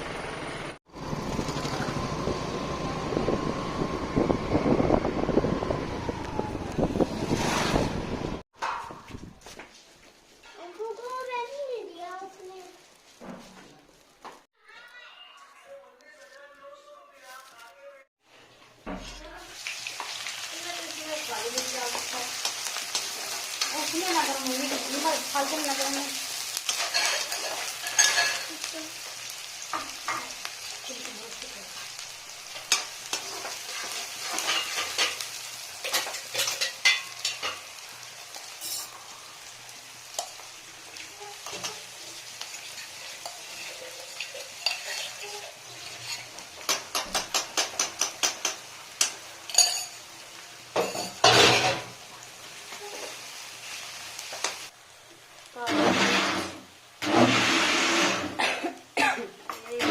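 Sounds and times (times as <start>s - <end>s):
chicken sizzling in a pan: 10.5s - 15.1s, 19.0s - 59.9s
spatula scraping a pan: 26.7s - 28.6s, 32.6s - 35.2s, 41.3s - 48.6s, 55.6s - 58.4s.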